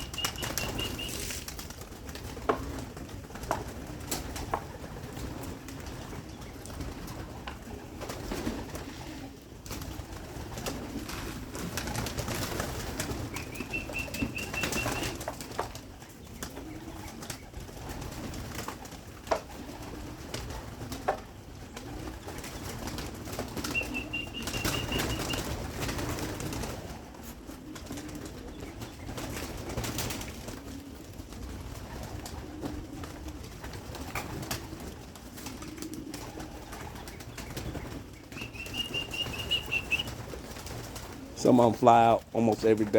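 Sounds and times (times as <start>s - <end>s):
high whistles: 0.0s - 1.3s, 13.4s - 15.2s, 23.7s - 25.5s, 38.3s - 40.1s
pigeons cooing: 0.0s - 41.9s
wings flapping: 0.0s - 42.9s.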